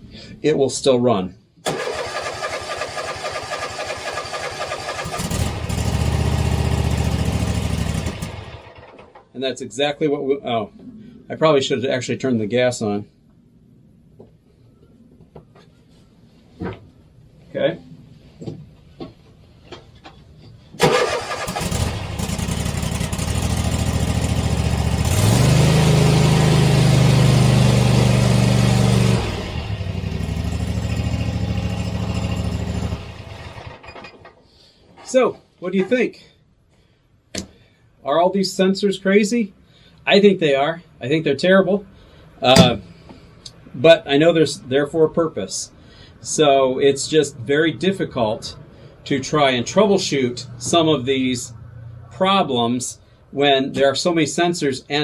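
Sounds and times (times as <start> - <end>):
mower engine cranking on starter: 1.6 - 9.3, 20.8 - 34.4
mower engine running: 1.7 - 9.2, 20.8 - 33.9.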